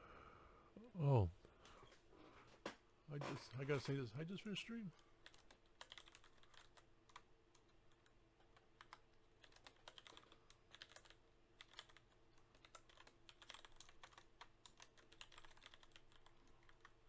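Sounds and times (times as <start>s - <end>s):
computer keyboard keystrokes: 5.2s - 17.0s.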